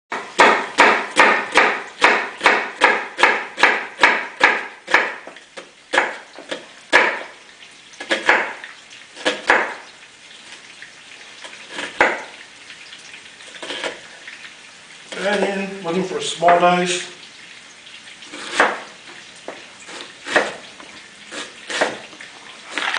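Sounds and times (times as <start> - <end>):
knife chopping onion: 0.1 - 7.4, 8.0 - 8.6, 9.2 - 9.9, 11.6 - 12.3, 18.3 - 20.7, 21.3 - 22.1.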